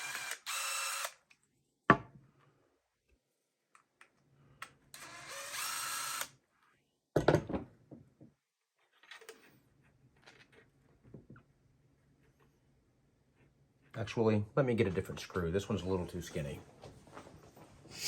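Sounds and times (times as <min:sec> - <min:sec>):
cordless drill running: 0:00.0 - 0:01.2, 0:05.0 - 0:06.4.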